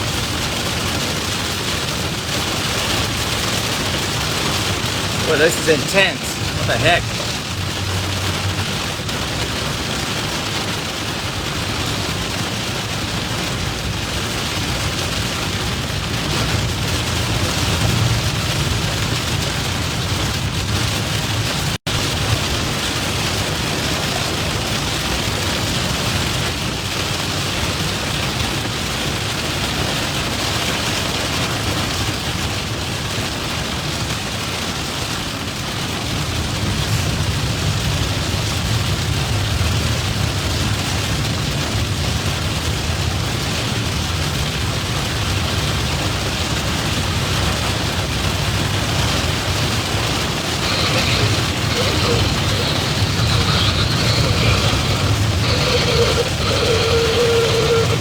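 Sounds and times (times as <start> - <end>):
heavy rain on vehicle: 0.0 - 50.6.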